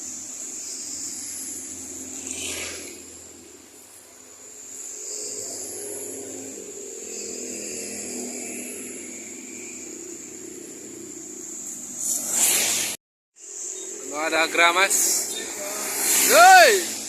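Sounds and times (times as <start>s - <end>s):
tyres rushing on wet road: 14.1s - 17.0s.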